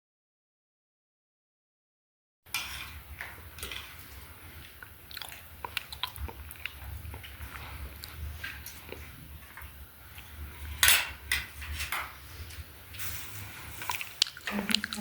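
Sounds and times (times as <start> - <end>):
cutlery and dishes clinking: 10.6 - 12.2.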